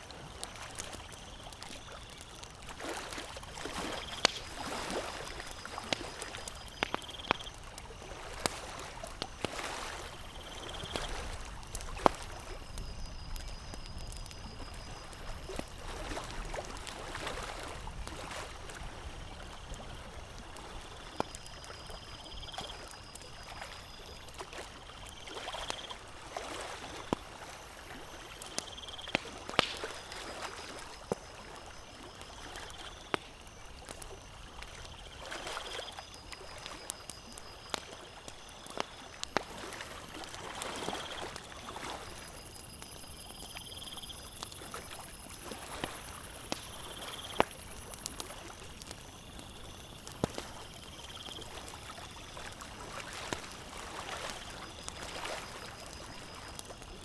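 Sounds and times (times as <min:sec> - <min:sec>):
campfire crackling and popping: 0:00.1 - 0:57.0
lake water lapping: 0:00.1 - 0:57.0.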